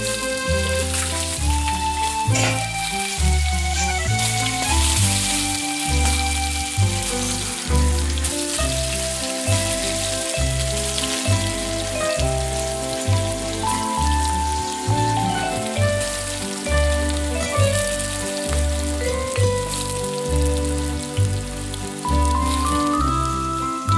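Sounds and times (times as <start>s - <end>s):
food frying in a pan: 0.0s - 23.9s.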